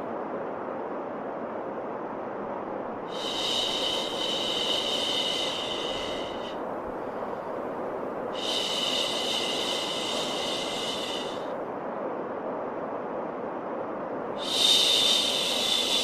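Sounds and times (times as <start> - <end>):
white noise: 0.0 - 16.0.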